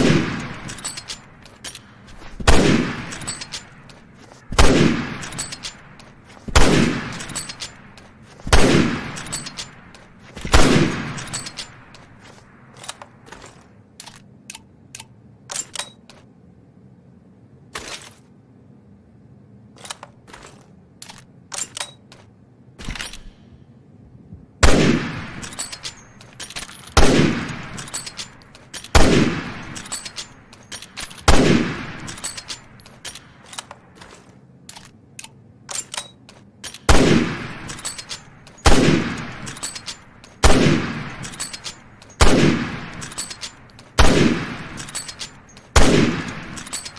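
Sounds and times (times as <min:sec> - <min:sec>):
loud rifle shots: 0:00.0 - 0:01.1, 0:02.4 - 0:03.8, 0:04.5 - 0:11.9, 0:24.6 - 0:26.0, 0:27.0 - 0:28.2, 0:28.9 - 0:30.2, 0:31.0 - 0:32.7, 0:36.9 - 0:46.9
rifle bolt clicks and clacks: 0:00.0 - 0:16.3, 0:19.8 - 0:23.5, 0:24.7 - 0:46.9.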